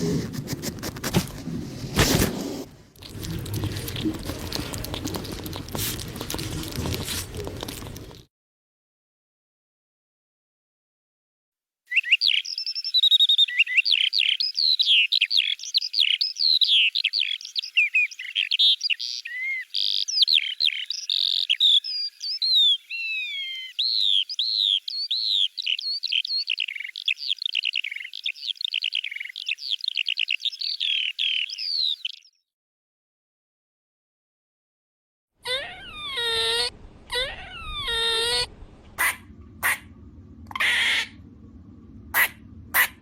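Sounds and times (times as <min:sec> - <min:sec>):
songbird singing: 0:11.9 - 0:32.4.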